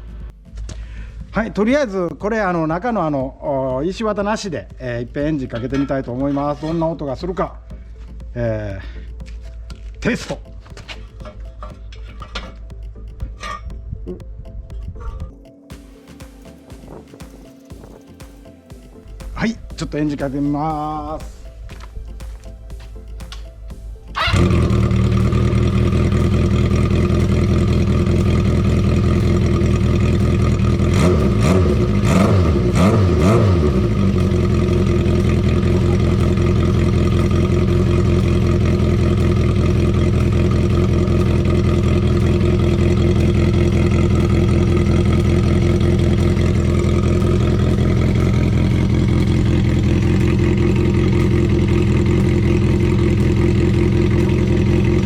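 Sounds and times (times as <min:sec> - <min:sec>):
motorcycle engine idling: 0:22.7 - 0:55.0
motorcycle engine revving: 0:24.1 - 0:55.0.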